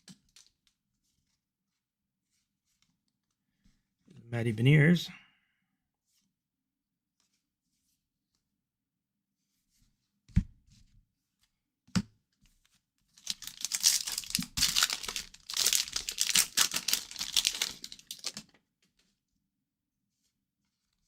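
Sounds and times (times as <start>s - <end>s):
wrapper tearing and crinkling: 13.2s - 18.4s.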